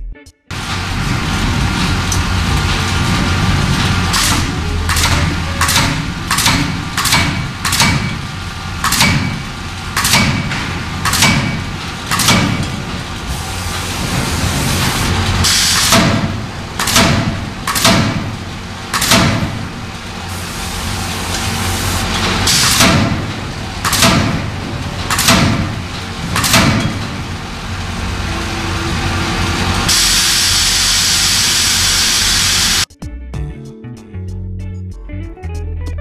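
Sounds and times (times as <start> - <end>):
shop machinery hum: 0.5 - 32.9
forging hammer blows on metal: 4.0 - 14.8, 15.4 - 32.8
guitar music: 4.4 - 6.3, 32.9 - 36.0
loud steady hiss: 19.6 - 22.9, 29.8 - 32.9.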